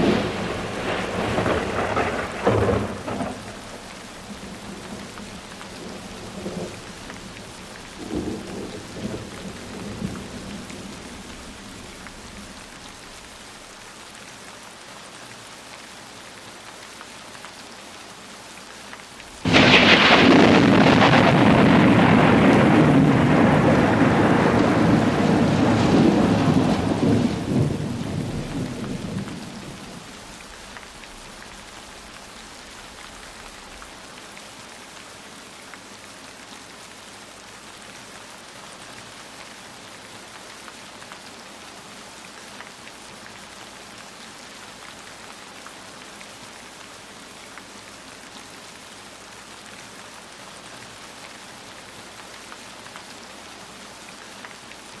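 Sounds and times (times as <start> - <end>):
loud thunderclap: 0.0 - 7.4, 19.4 - 30.2
thunder rumbling: 0.0 - 13.0, 19.4 - 31.5
heavy rain falling: 0.0 - 55.0.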